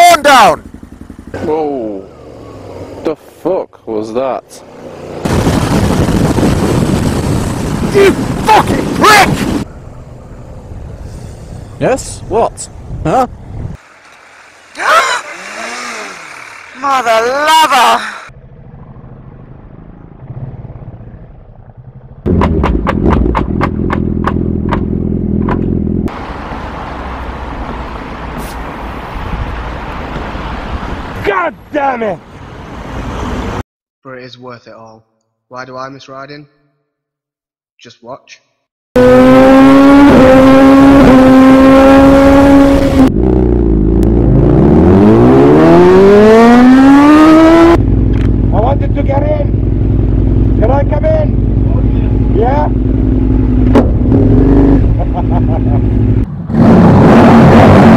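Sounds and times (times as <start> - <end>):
wind and road rush: 0.0 - 33.6, 39.0 - 57.9
engine running: 0.6 - 3.0, 12.8 - 26.3, 39.0 - 57.9
engine exhaust cracks: 22.2 - 25.7, 48.0 - 48.4.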